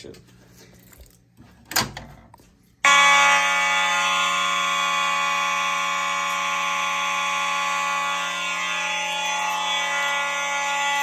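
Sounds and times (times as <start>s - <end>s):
fire alarm horns blaring: 2.8s - 11.0s.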